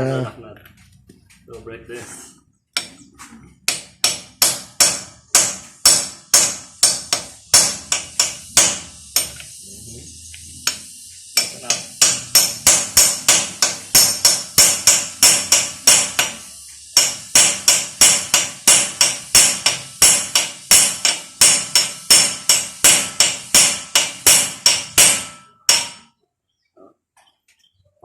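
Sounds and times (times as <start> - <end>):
hammer blows on metal: 10.6 - 26.2.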